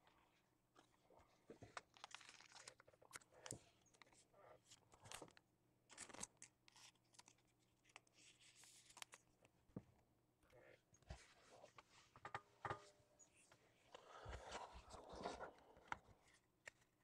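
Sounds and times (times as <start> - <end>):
wrapper crinkling and tearing: 1.9 - 3.2.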